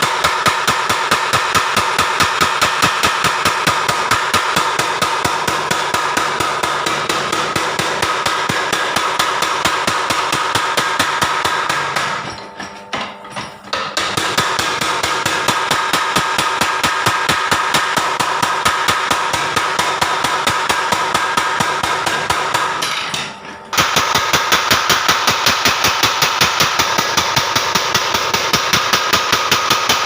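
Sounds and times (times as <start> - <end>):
power hammer striking: 0.0 - 30.0.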